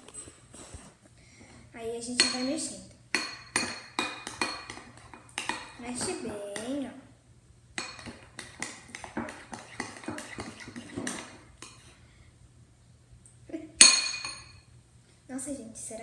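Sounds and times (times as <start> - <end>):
spoon scraping against bowl: 3.2 - 6.4, 7.8 - 12.0.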